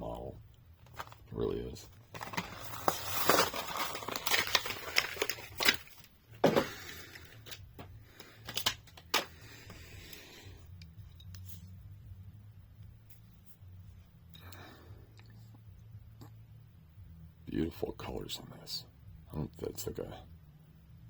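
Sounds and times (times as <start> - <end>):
blister package tearing and crinkling: 2.0 - 7.6.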